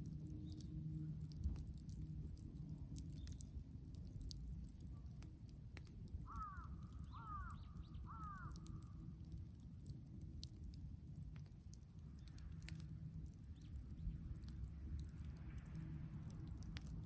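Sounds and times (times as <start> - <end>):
brushwood fire crackling: 0.0 - 17.0
crow cawing: 6.3 - 8.7.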